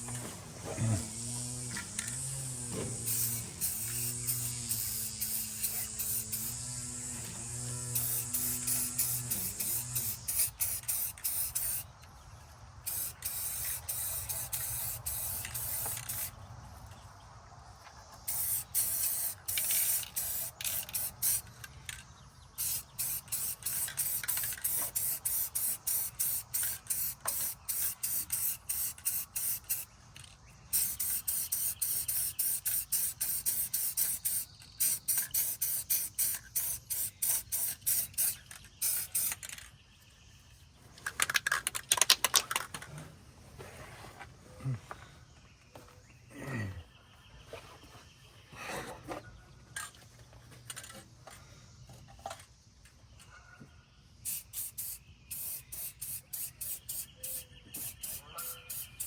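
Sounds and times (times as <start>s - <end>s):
spray can hissing: 1.1s - 11.9s, 12.8s - 16.4s, 18.2s - 21.6s, 22.5s - 30.0s, 30.7s - 39.5s, 54.2s - 59.0s.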